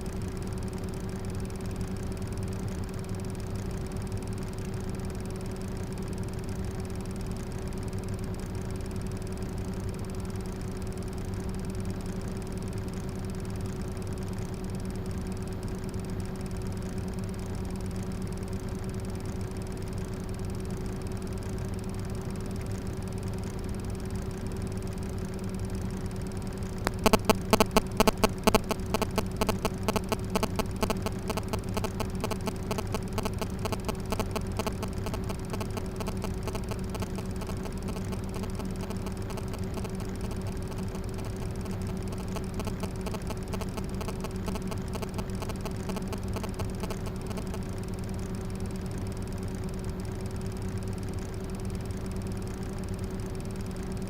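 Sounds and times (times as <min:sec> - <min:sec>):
small fan humming: 0:00.0 - 0:54.0
rapid ticking: 0:26.0 - 0:54.0.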